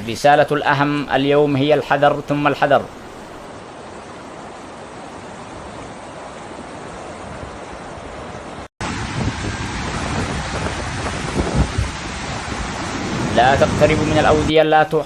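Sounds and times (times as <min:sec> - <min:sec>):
wind buffeting microphone: 0:04.6 - 0:14.5
heavy rain hissing: 0:08.8 - 0:14.5.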